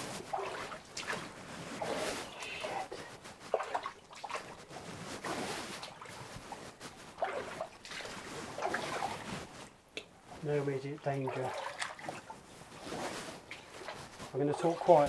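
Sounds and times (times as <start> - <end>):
boots sloshing through water: 0.0 - 9.8, 11.0 - 15.0.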